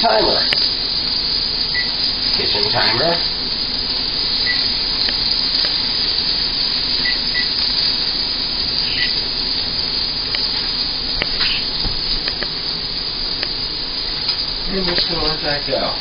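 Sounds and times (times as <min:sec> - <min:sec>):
meat sizzling on a grill: 0:00.0 - 0:16.0
faint clicks and pops: 0:11.2 - 0:12.6.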